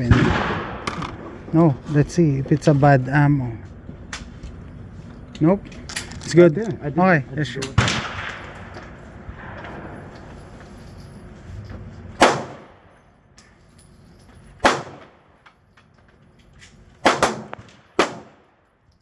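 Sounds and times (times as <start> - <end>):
pistol shots: 0.0 - 1.2, 12.2 - 12.8, 14.6 - 15.2, 17.0 - 18.5.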